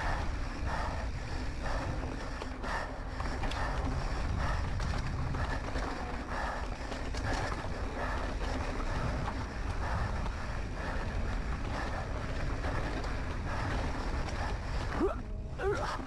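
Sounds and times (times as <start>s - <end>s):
mountain bike rumbling and rattling: 0.0s - 16.0s
wind buffeting microphone: 0.0s - 16.0s.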